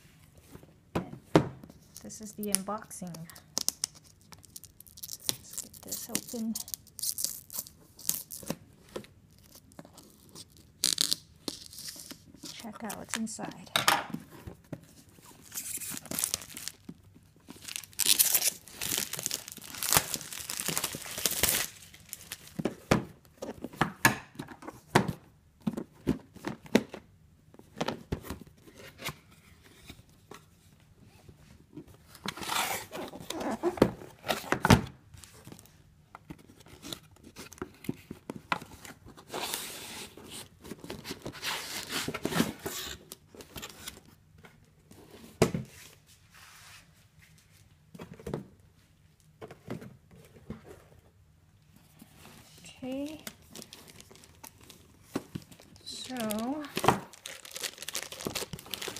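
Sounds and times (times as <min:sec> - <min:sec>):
packaging tearing and crinkling: 0:03.3 - 0:08.5, 0:09.4 - 0:13.2, 0:15.4 - 0:22.6, 0:53.0 - 0:58.9.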